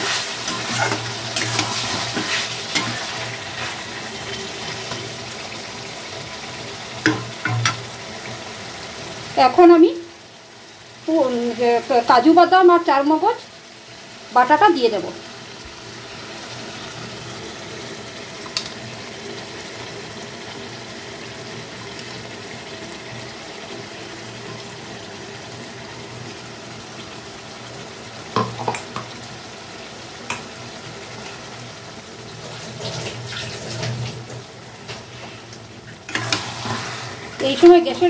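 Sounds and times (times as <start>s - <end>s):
stirring and scraping: 0.0s - 5.2s
food sizzling in a pan: 0.0s - 38.0s
spoon clicking on pan: 7.0s - 7.8s.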